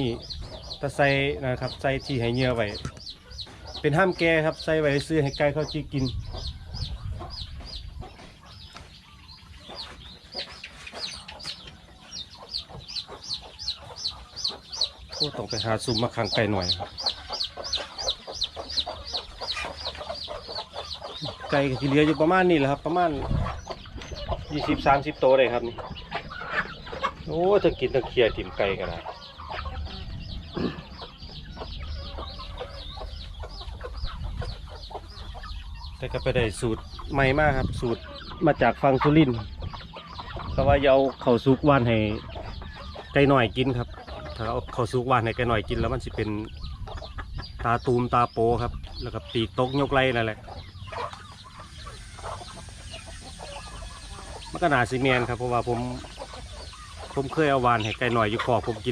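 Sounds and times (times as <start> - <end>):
chicks peeping: 0.0 - 58.9
hens clucking: 0.0 - 58.9.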